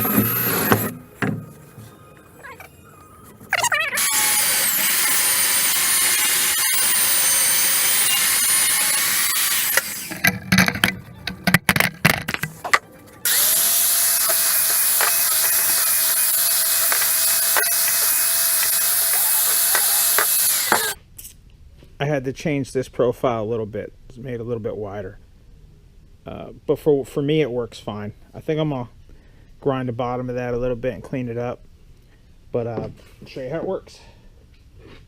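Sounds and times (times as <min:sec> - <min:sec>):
electric grinder whining: 0:00.0 - 0:11.5, 0:13.2 - 0:21.0.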